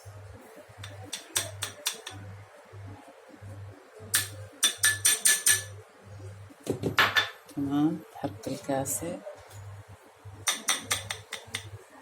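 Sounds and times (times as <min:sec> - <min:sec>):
spoon clinking against glass bowl: 0:00.8 - 0:02.2, 0:04.2 - 0:05.7, 0:10.5 - 0:11.7.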